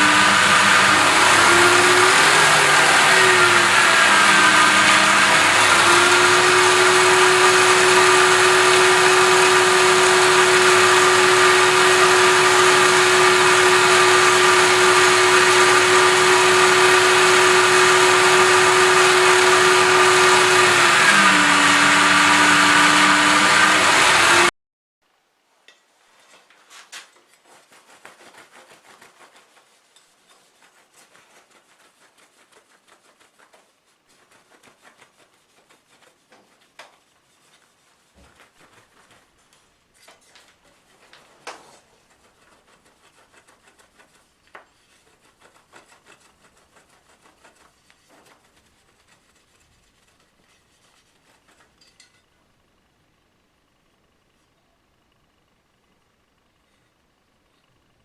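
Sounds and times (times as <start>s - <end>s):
hand rubbing and scraping: 0.0s - 18.0s, 26.0s - 52.2s.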